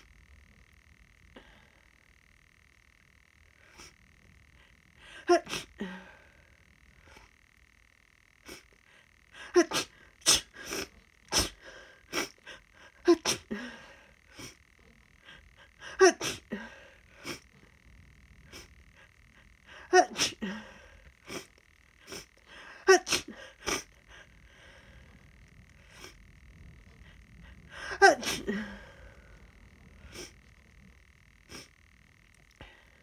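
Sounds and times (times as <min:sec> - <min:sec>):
person sneezing: 0:05.1 - 0:06.0, 0:09.5 - 0:12.4, 0:13.0 - 0:13.7, 0:15.9 - 0:17.4, 0:19.8 - 0:20.7, 0:22.1 - 0:23.9, 0:27.8 - 0:28.9.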